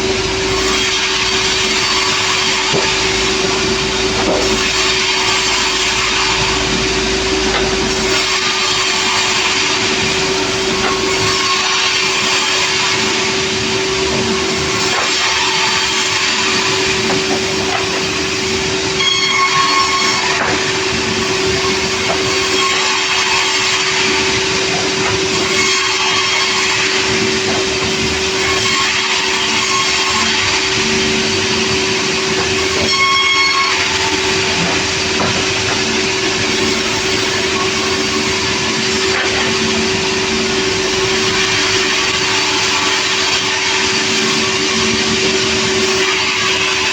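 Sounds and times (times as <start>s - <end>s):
sawmill machinery humming: 0.0s - 46.9s
high-pitched squeal: 29.8s - 34.9s.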